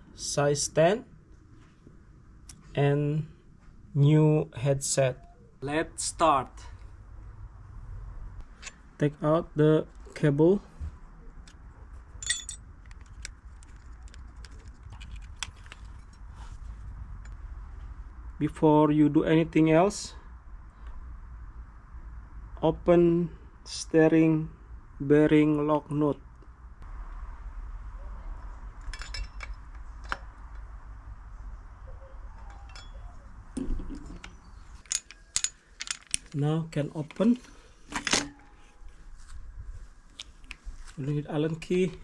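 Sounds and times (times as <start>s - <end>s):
steady low hum: 0.0s - 42.0s
hand tools clinking on metal: 12.2s - 12.6s, 32.5s - 33.2s
metal jingling ring: 12.2s - 12.7s, 32.5s - 33.2s
metallic clicks and clinks: 12.2s - 16.2s, 28.8s - 30.2s, 32.5s - 33.2s, 34.0s - 36.4s.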